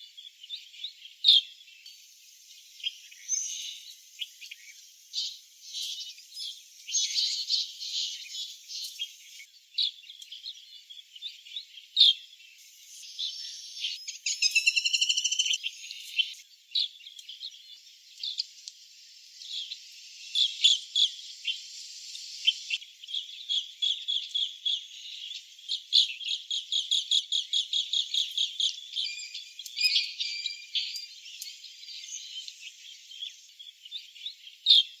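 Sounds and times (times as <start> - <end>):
birds chirping and trilling: 0.0 - 35.0.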